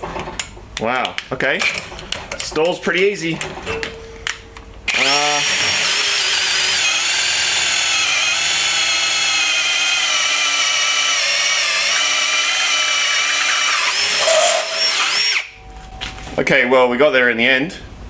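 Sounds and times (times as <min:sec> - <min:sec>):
drill motor whining: 0:04.9 - 0:15.6.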